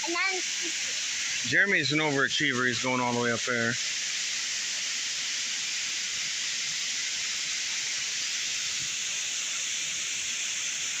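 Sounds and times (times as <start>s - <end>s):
rushing water: 0.0s - 11.0s.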